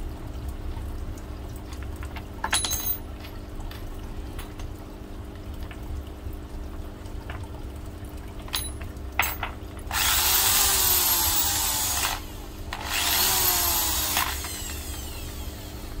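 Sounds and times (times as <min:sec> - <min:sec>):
electric drill running: 0:09.9 - 0:16.0.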